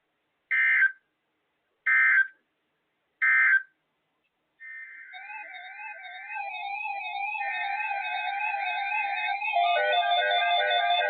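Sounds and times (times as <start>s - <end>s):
digital data tones: 4.7s - 11.0s
music with warbling tone: 5.1s - 11.0s.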